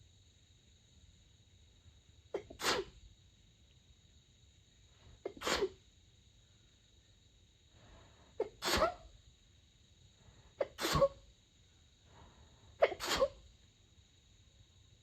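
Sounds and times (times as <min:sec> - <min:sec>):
woman sneezing: 0:02.3 - 0:03.0, 0:05.2 - 0:05.8, 0:08.4 - 0:09.1, 0:10.6 - 0:11.2, 0:12.8 - 0:13.4.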